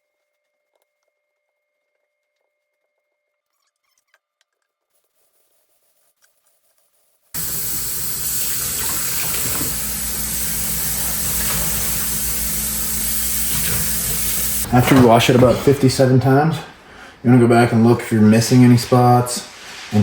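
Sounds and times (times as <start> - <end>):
water running from a tap: 7.4 - 15.8.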